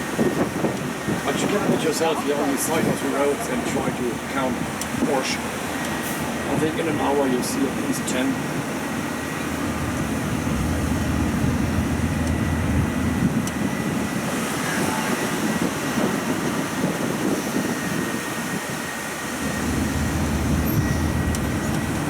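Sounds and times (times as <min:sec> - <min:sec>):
road train engine hum: 0:00.0 - 0:22.0.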